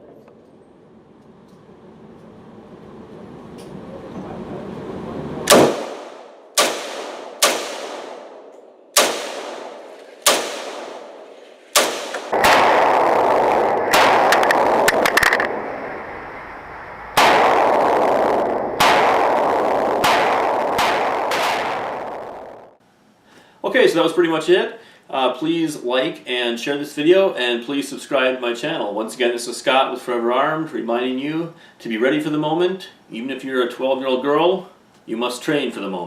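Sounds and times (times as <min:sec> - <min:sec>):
gunshots: 0:05.5 - 0:15.9, 0:17.1 - 0:22.7
loud rushing noise with crackling: 0:09.0 - 0:22.8.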